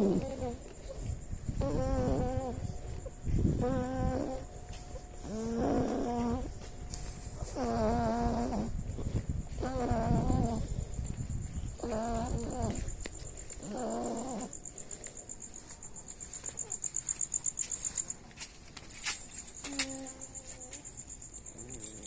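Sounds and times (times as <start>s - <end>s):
cricket chirping: 0.0s - 22.0s.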